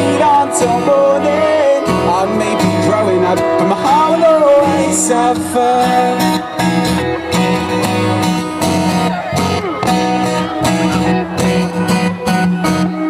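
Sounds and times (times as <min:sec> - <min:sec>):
strummed guitar: 0:00.0 - 0:13.0.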